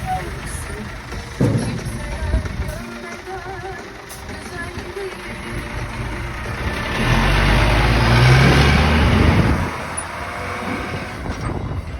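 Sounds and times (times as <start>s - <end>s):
truck diesel engine revving: 0.0s - 11.9s.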